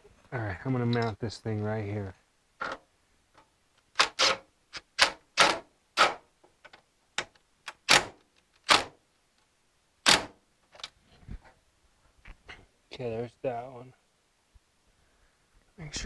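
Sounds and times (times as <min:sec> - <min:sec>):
screw driven into sheet metal: 0:04.0 - 0:06.2.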